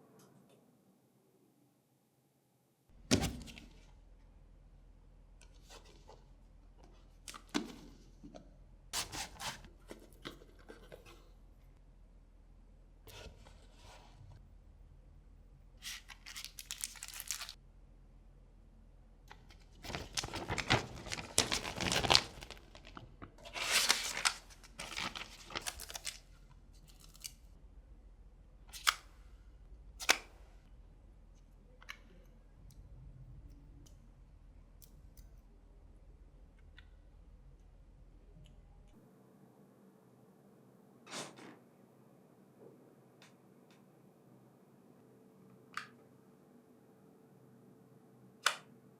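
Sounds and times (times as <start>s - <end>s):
packaging ripping and rustling: 15.8s - 17.6s, 19.8s - 26.2s.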